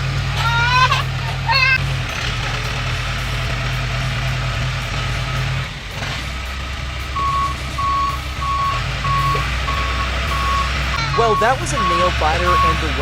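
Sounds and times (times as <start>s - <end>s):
heavy vehicle engine running: 0.0s - 13.0s
reversing alarm beeping: 7.2s - 13.0s.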